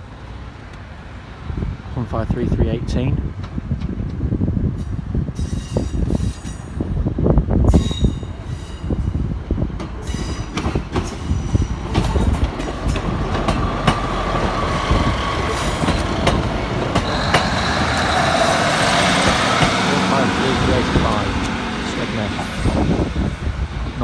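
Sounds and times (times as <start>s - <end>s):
train low rumble: 0.0s - 24.0s
high wheel squeal: 17.0s - 21.7s.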